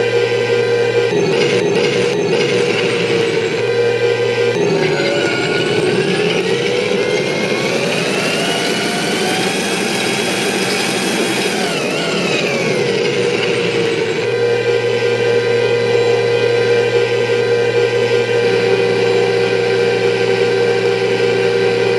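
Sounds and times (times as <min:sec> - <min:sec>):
simulated tank engine through speaker: 0:00.0 - 0:21.9.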